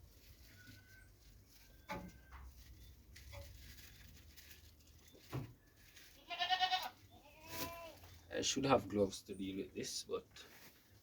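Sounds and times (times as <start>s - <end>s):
goat bleating: 6.2s - 8.0s.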